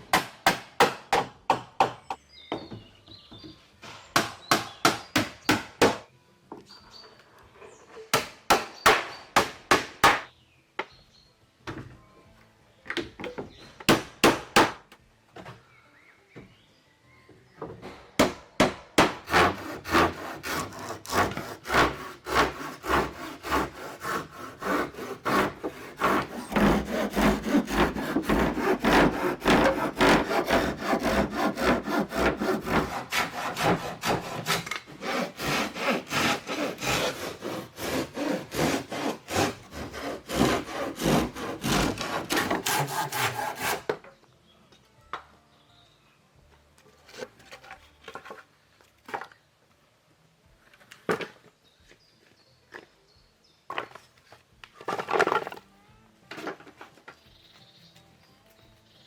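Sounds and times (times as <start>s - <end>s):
hand saw cutting wood: 18.6s - 44.0s.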